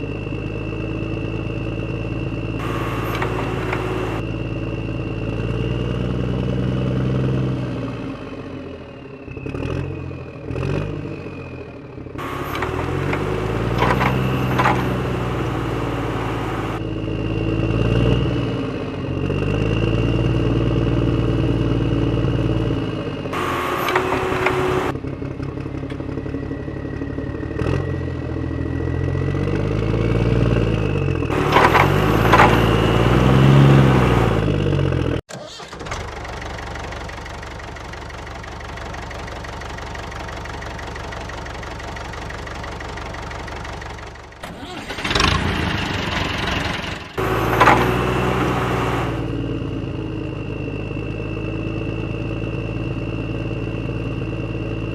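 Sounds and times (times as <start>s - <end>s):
engine idling: 0.0s - 6.1s, 11.2s - 17.1s, 21.6s - 54.9s
vehicle engine revving: 0.0s - 37.8s, 38.8s - 54.9s.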